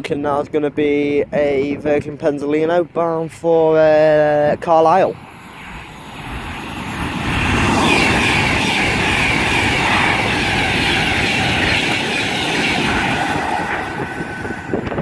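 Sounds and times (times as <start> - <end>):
electric train passing: 4.0 - 15.0.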